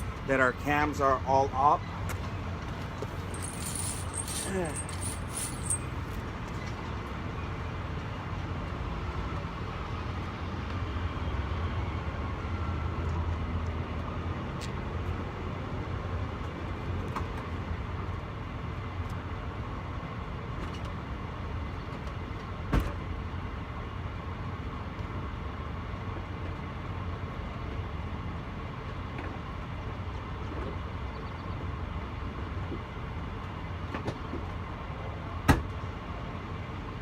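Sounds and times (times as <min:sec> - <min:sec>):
vehicle engine and road rumble: 0:00.0 - 0:10.9.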